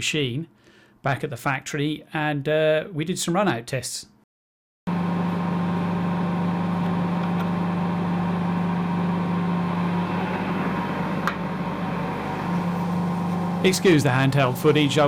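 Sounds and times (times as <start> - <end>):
spindle motor humming: 4.9 - 15.0.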